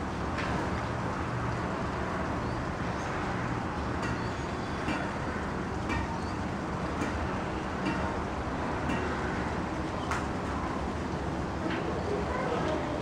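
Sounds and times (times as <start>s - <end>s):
distant road traffic hum: 0.0s - 13.0s.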